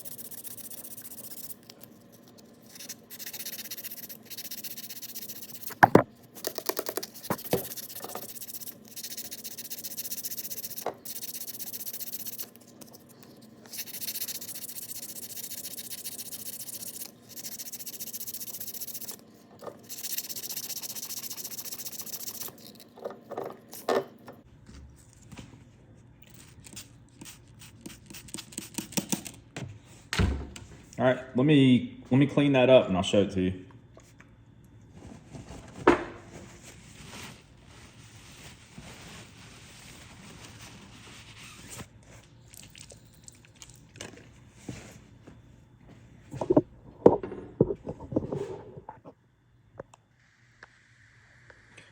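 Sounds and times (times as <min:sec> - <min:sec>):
sandpaper rubbing: 0:00.0 - 0:05.8, 0:06.9 - 0:19.2, 0:19.9 - 0:22.8.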